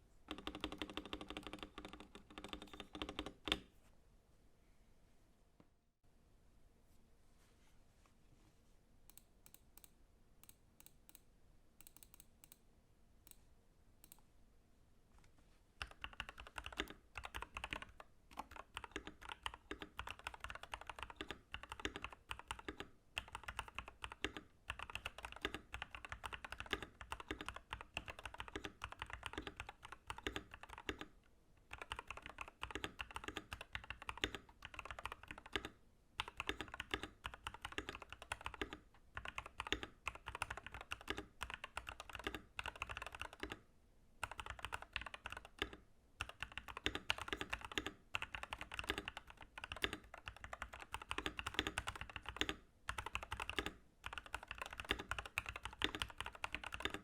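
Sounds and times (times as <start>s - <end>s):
typing on mechanical keyboard: 0.3s - 3.7s, 15.8s - 43.6s, 44.2s - 57.0s.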